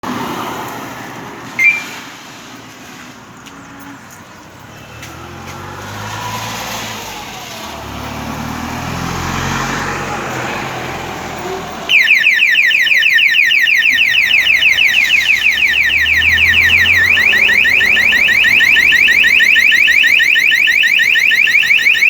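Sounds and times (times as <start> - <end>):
motorcycle alarm chirp: 1.6 - 2.1, 11.9 - 22.0.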